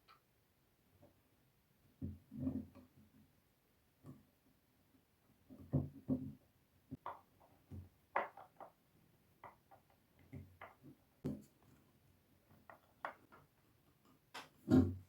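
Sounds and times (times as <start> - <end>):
wooden parts and screws clicking: 7.0 - 11.0.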